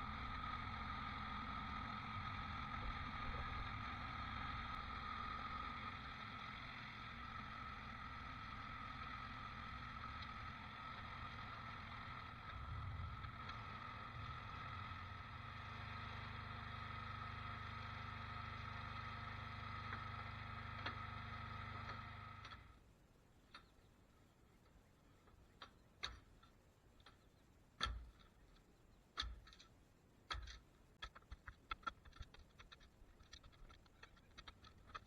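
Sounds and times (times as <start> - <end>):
engine-driven machinery running: 0.0 - 22.8.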